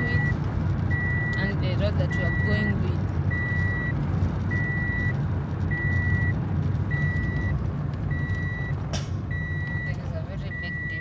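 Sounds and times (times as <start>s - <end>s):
car rumbling on road: 0.0s - 11.0s
vehicle warning beeps: 0.0s - 11.0s.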